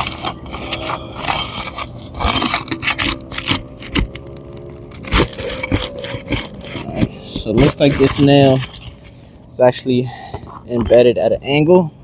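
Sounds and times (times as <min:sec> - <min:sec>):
tool scraping under roof shingles: 0:00.0 - 0:09.4.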